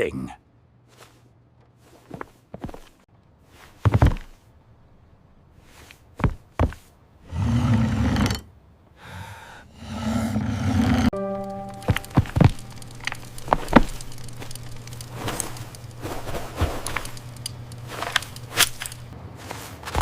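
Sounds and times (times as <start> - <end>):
rough rumbling noises: 6.2 - 11.1, 11.7 - 19.4.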